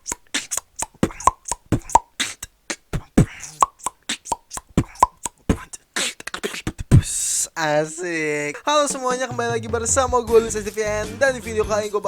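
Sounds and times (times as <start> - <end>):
human beatboxing: 0.0 - 7.6.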